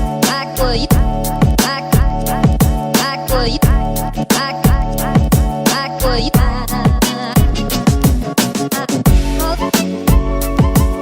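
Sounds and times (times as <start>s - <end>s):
hip hop music: 0.0s - 11.0s
person rapping: 0.1s - 9.8s
deep kick drums: 0.9s - 2.8s, 3.6s - 4.0s, 4.7s - 5.6s, 6.3s - 8.2s.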